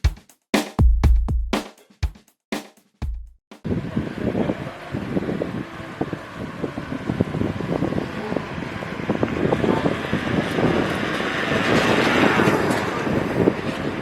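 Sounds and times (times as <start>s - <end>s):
wind buffeting microphone: 3.7s - 14.0s.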